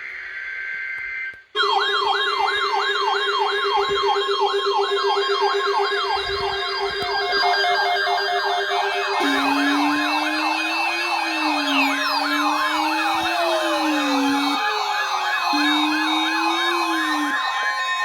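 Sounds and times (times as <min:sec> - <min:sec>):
electronic siren yelping: 0:00.8 - 0:18.0
steady electronic tone: 0:06.2 - 0:17.6.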